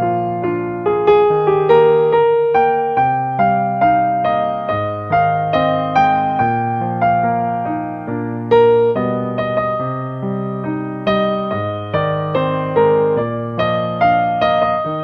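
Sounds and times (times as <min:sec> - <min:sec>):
slow gentle piano music: 0:00.0 - 0:15.0.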